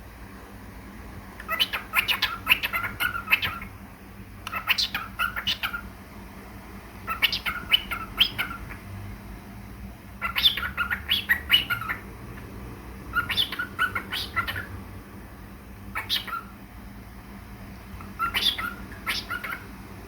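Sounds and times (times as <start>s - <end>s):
parrot chirping and whistling: 1.5s - 3.7s, 4.5s - 5.9s, 7.0s - 8.8s, 10.2s - 12.0s, 13.1s - 14.7s, 15.9s - 16.6s, 18.0s - 19.7s.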